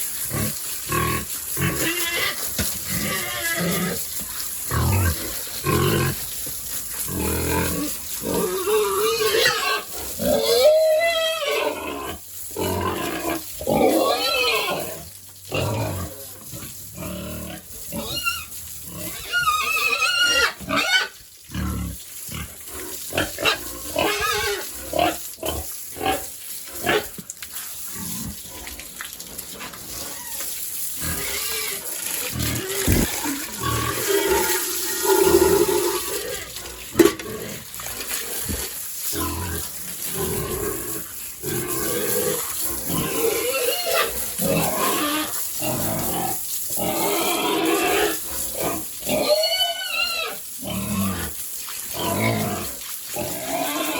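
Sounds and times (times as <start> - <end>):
pigs squealing and grunting: 0.0 - 27.2, 27.8 - 53.9.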